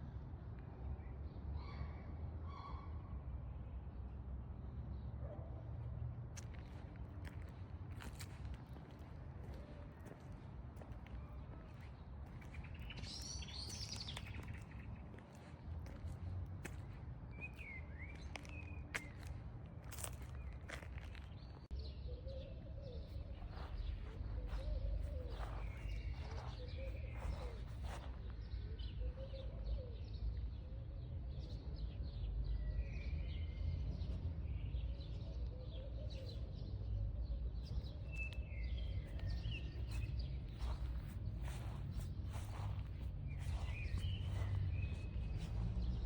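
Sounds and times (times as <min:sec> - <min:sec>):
bird chirps: 0:21.8 - 0:28.2, 0:37.9 - 0:45.8.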